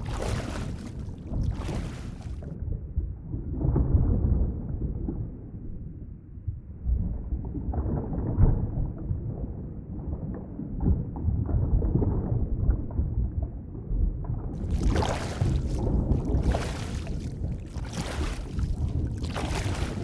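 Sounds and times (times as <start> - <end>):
hissing bubbling water: 0.0 - 2.5, 14.6 - 20.0
underwater gurgles and knocks: 0.0 - 2.5, 14.6 - 20.0
muffled underwater water rumble: 0.0 - 2.8, 14.6 - 20.0.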